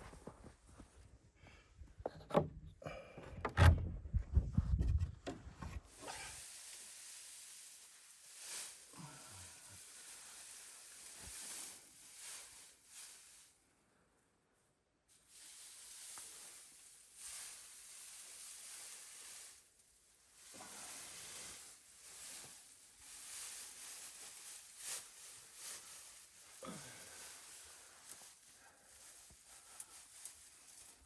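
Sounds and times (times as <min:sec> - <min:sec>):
hissing and sizzling in stove: 0:05.9 - 0:13.6, 0:15.1 - 0:26.6.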